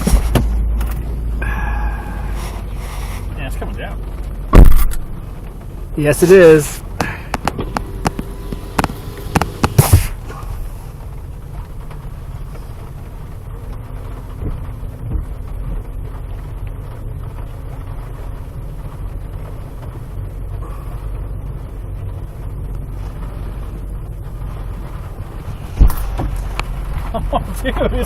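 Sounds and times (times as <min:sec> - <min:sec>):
truck engine rumbling: 0:00.0 - 0:28.0
sharp knocks: 0:04.5 - 0:05.2, 0:07.0 - 0:10.2.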